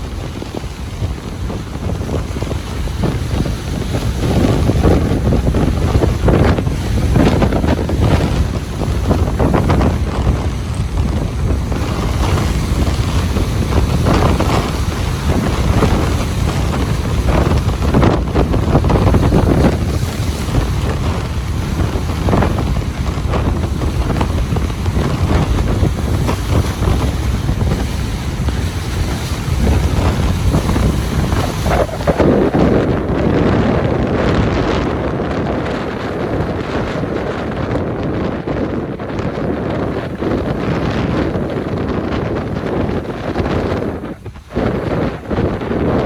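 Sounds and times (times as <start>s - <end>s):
ocean surf on beach: 0.0s - 46.0s
wind buffeting microphone: 0.0s - 46.0s.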